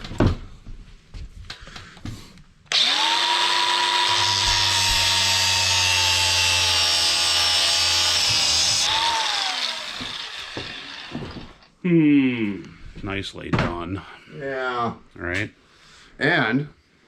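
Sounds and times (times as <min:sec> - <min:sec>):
electric power tool whining: 0:02.7 - 0:11.7.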